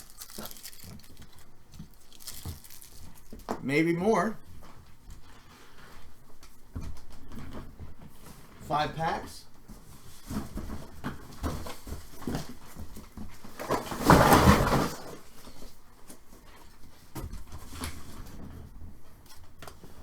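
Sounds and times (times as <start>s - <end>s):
packaging crinkles and clicks: 0.0s - 3.5s
wrapping tearing: 0.0s - 3.5s.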